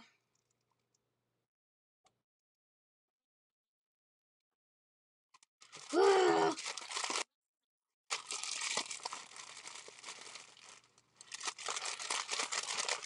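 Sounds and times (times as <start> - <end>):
plastic bag of beads crinkling: 6.6 - 7.3, 8.1 - 13.0.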